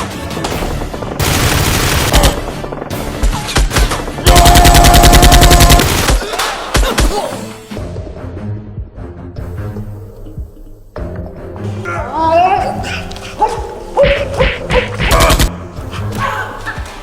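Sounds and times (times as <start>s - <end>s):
automatic gunfire: 1.2s - 2.6s, 3.6s - 6.2s.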